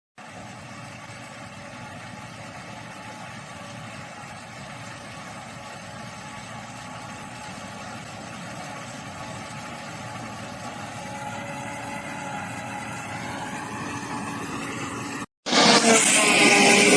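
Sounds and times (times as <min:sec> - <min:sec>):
harvester engine and machinery: 0:00.2 - 0:16.9.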